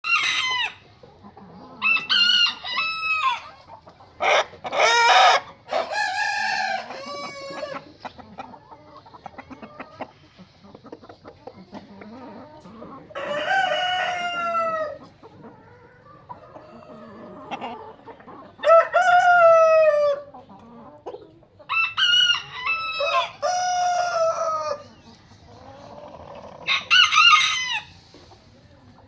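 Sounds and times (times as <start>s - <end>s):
clucking calls: 0.0s - 6.1s, 6.7s - 29.0s
rooster crowing: 1.8s - 3.5s, 4.9s - 7.8s, 18.6s - 20.3s, 21.7s - 24.8s, 26.6s - 28.0s.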